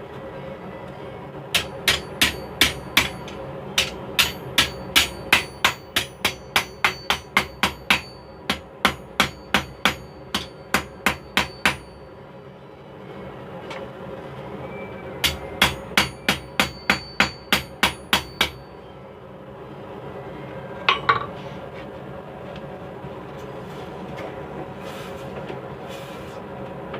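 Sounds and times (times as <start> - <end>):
anvil ringing: 1.6 - 12.0, 15.2 - 18.7
hammer striking steel on anvil: 1.6 - 12.0, 15.2 - 18.7.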